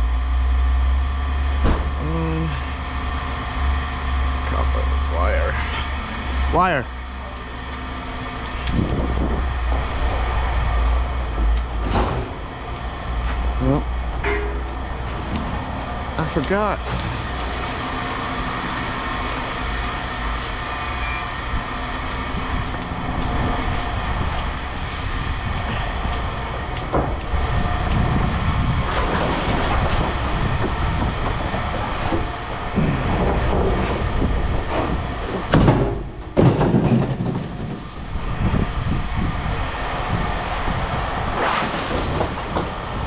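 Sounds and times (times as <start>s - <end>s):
heavy machinery running: 0.0s - 43.0s
metal scrap clanking and scraping: 14.2s - 15.7s, 31.3s - 38.0s.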